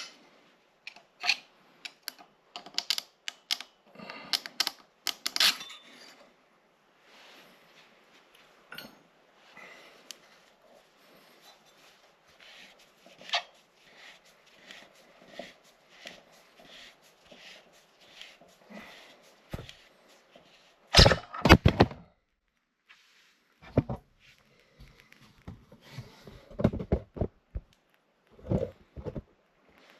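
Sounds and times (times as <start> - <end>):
tools scraping and clicking: 0.8 - 6.2, 12.4 - 18.4.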